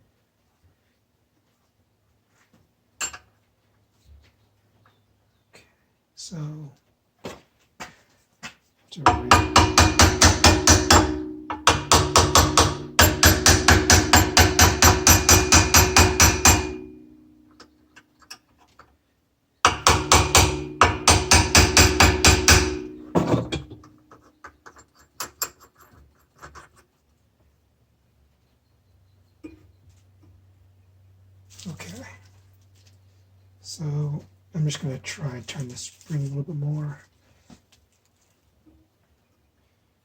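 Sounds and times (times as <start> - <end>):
impact wrench hammering: 9.0 - 17.2, 19.7 - 24.0
metal sheave ringing: 9.0 - 17.6, 19.7 - 24.0.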